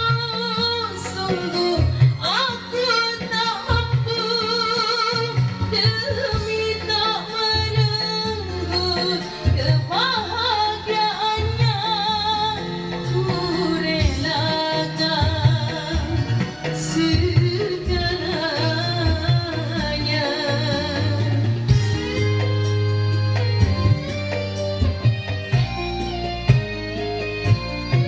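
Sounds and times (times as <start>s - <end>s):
steady bass beat: 15.4s - 28.0s.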